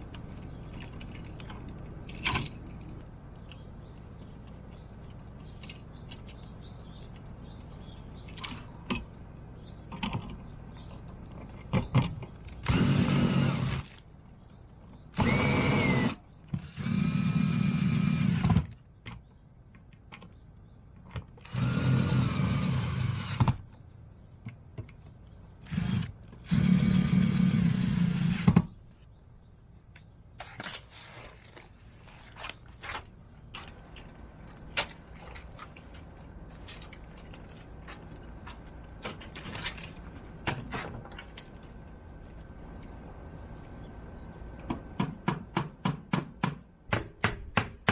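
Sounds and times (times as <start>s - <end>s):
power drill spinning up: 15.2s - 18.5s, 21.5s - 23.4s.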